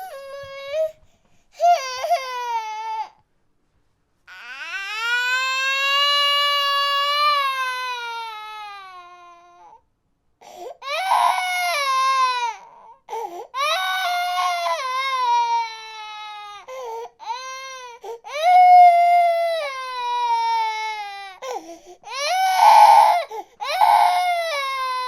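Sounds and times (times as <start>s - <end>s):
infant crying: 0.0s - 1.0s, 1.6s - 3.2s, 4.3s - 9.8s, 10.6s - 25.0s
infant gasping for breath: 10.4s - 10.8s, 13.1s - 13.6s, 16.7s - 17.1s, 21.4s - 22.1s, 23.3s - 23.6s.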